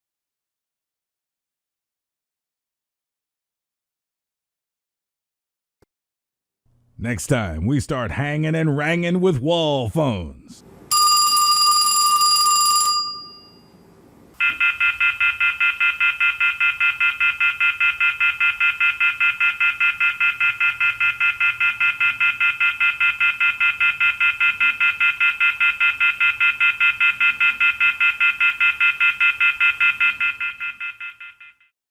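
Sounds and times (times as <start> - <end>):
telephone electronic ringer: 10.9 - 13.8, 14.4 - 31.7
short ringing tone: 10.9 - 15.0.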